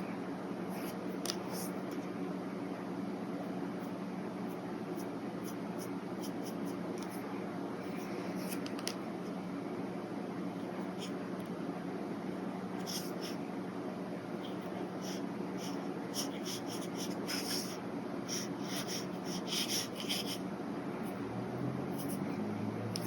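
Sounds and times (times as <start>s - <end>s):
steady low hum: 0.0s - 23.0s
brush pen stroking paper: 5.0s - 7.2s, 12.8s - 13.4s, 14.4s - 20.4s.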